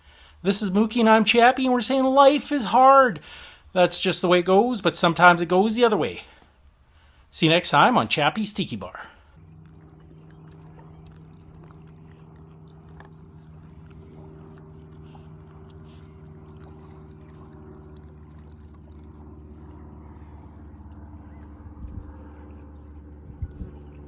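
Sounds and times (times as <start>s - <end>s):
low motor hum: 8.8s - 24.0s.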